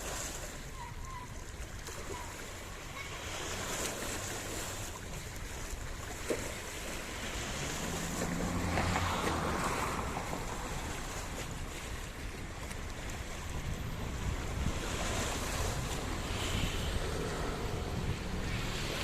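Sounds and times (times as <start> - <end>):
sea wash: 0.0 - 19.0
wind noise: 13.3 - 19.0.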